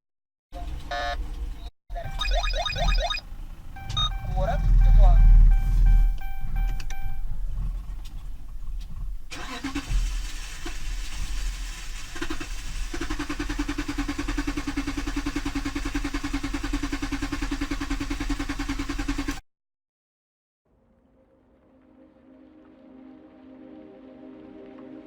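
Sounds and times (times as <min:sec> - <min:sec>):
engine running evenly: 0:03.0 - 0:19.4
engine cranking by starter: 0:03.2 - 0:19.4.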